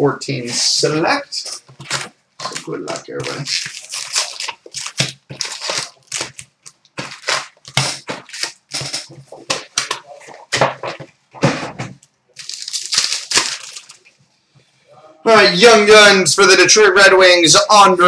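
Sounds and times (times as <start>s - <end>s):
foil wrappers tearing and crinkling: 1.4s - 10.6s, 12.4s - 14.1s.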